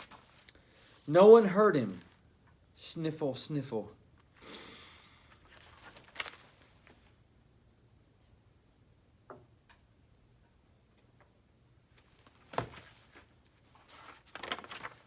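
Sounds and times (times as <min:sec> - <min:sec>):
paper pages rustling: 0:00.0 - 0:01.1, 0:05.3 - 0:07.1, 0:12.0 - 0:15.0.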